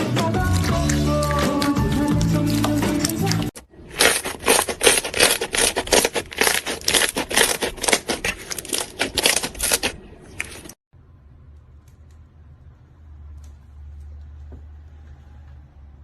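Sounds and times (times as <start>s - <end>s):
background music: 0.0s - 3.5s
slime clicking and crackling: 0.4s - 10.8s.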